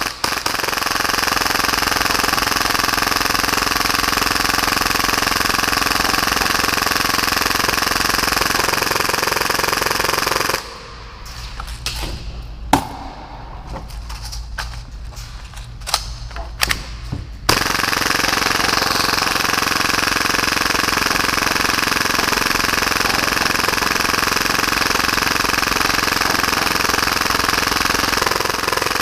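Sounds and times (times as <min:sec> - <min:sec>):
airsoft pistol full-auto burst: 0:00.0 - 0:10.8, 0:17.5 - 0:29.0.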